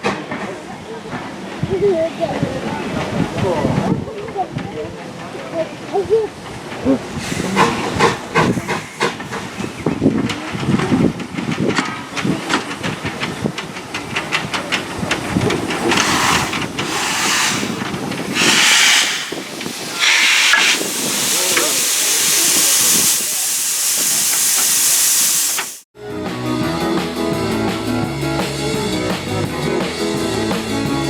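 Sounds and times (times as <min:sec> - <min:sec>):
steam locomotive hissing: 0:06.4 - 0:10.6, 0:12.7 - 0:25.9.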